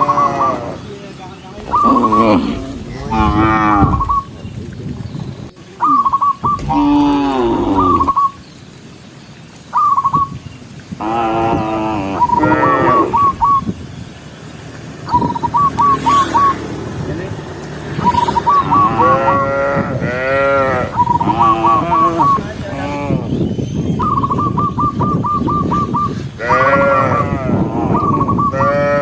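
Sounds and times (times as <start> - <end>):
cows mooing: 0.0 - 0.9, 1.6 - 4.4, 6.6 - 8.2, 11.0 - 13.2, 18.3 - 23.3, 26.4 - 29.0.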